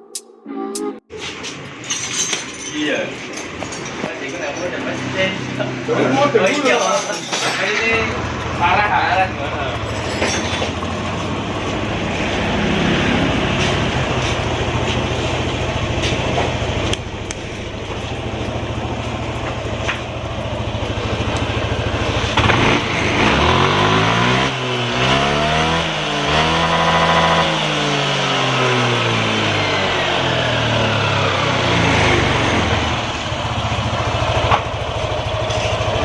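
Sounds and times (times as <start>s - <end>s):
scooter engine idling roughly: 7.6s - 24.9s, 27.8s - 36.0s
scooter engine revving: 7.8s - 36.0s.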